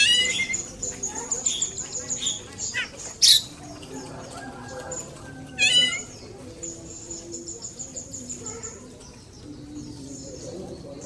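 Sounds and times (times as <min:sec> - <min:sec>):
loud wavering mewing call: 0:00.0 - 0:00.7, 0:05.6 - 0:06.2
bird high chirps: 0:00.0 - 0:03.6.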